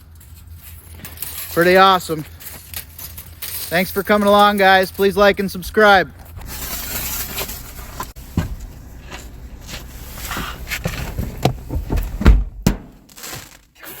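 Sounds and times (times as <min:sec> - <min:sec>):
knocks and bumps: 0:08.0 - 0:13.6
loud thump: 0:11.4 - 0:13.1.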